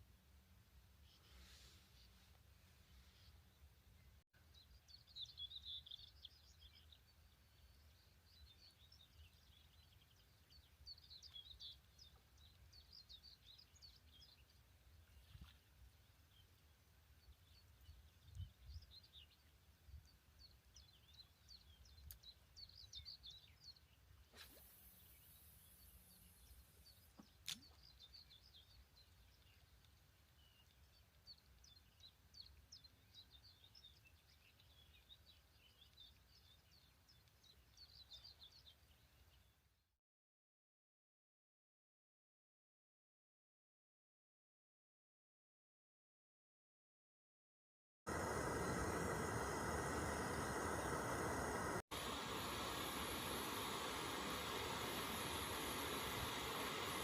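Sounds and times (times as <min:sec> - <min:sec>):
faint birds chirping: 0:00.8 - 0:39.9, 0:48.1 - 0:57.0
brief hiss: 0:01.1 - 0:03.4, 0:24.3 - 0:26.6, 0:48.1 - 0:57.0.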